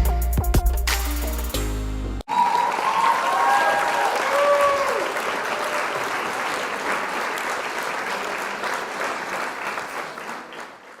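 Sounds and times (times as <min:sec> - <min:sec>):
crowd applause: 0:02.3 - 0:11.0.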